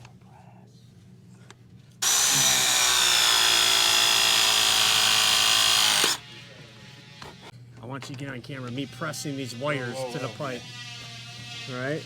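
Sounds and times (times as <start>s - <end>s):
press tool motor whine: 2.0s - 6.2s.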